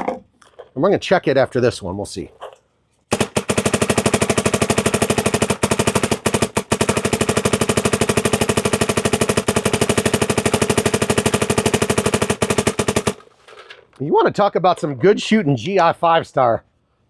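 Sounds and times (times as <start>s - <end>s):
paintball marker rapid firing: 3.1s - 13.3s.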